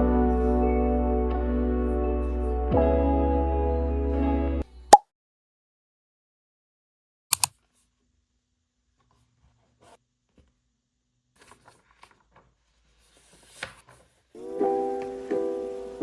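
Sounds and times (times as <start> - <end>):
sharp clicks: 7.3 - 7.5.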